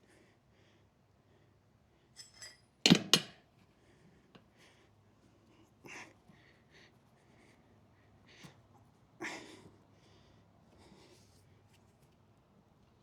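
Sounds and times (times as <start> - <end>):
metal tyre levers clinking: 2.9 - 3.4
sharp metallic clanks: 2.9 - 3.4.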